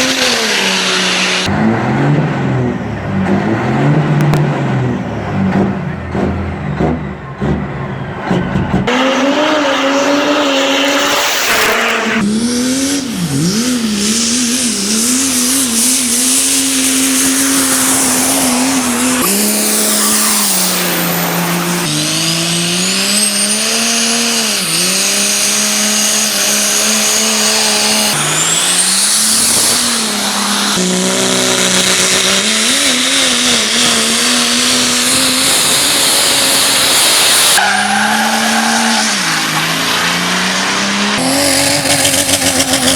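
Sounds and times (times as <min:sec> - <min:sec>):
diesel engines revving hard: 0:00.0 - 0:42.9
turbo whistle: 0:19.1 - 0:21.0.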